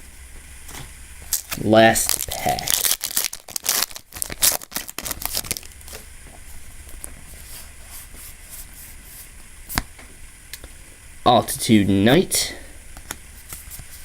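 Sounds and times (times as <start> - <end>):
cards rustling: 0.7 - 9.9, 13.0 - 14.0
foil wrapper tearing and crinkling: 1.3 - 6.0.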